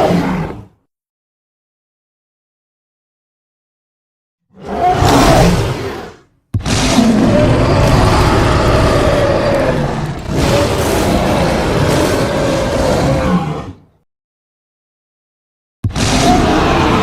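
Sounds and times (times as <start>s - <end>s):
rasping animal roars: 4.5s - 13.9s, 16.0s - 17.0s.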